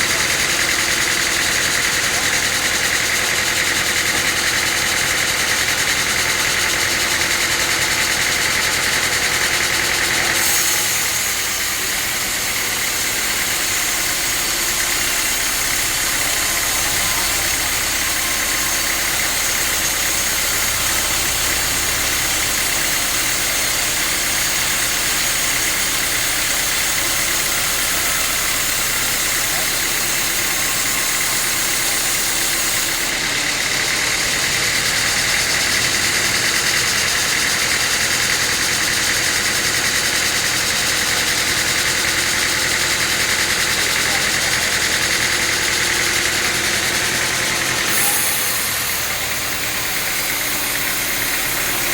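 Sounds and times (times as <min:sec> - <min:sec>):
sawmill machinery running: 0:00.0 - 0:51.9.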